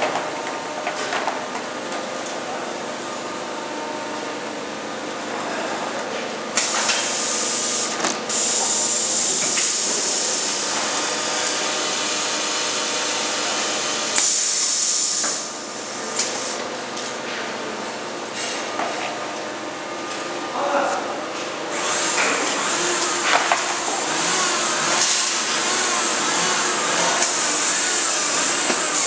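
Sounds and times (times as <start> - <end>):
loud high hiss: 6.6 - 16.6, 22.8 - 29.0
steady machine hum: 19.2 - 29.0.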